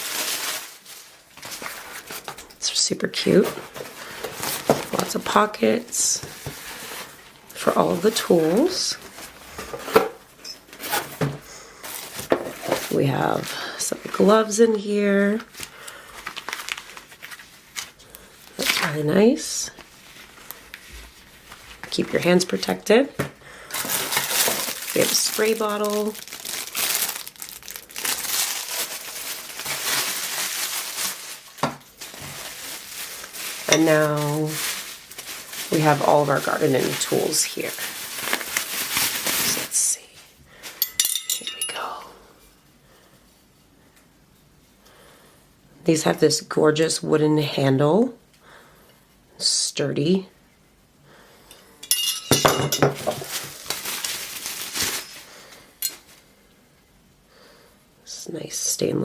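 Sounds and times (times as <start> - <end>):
packaging crinkling and rustling: 0.0 - 39.8, 52.3 - 56.3
metal garden tools clinking: 40.8 - 42.0, 51.8 - 53.1.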